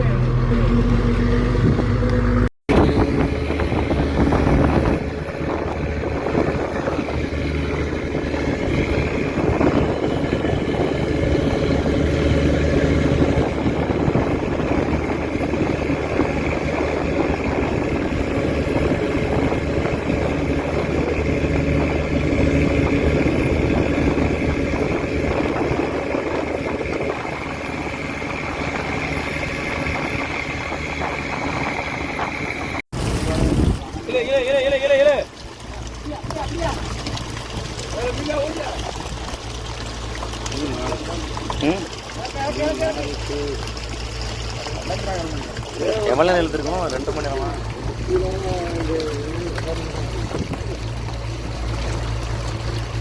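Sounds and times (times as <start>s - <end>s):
boat engine running steadily: 0.0s - 53.0s.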